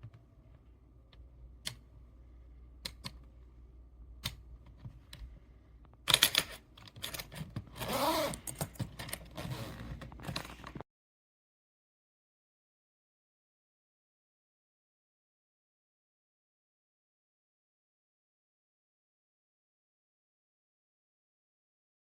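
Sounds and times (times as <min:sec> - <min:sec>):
rustling and scraping handling noise: 0:06.4 - 0:10.8.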